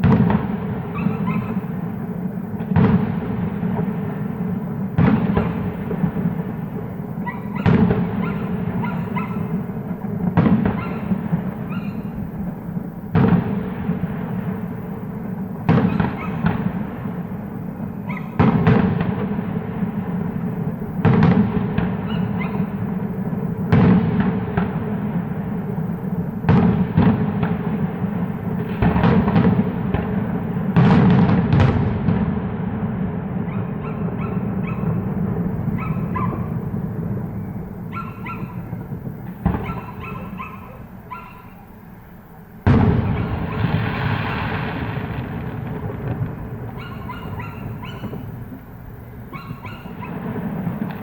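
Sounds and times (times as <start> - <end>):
fireworks booming: 0.0 - 51.0
crackling sparkles: 33.8 - 51.0.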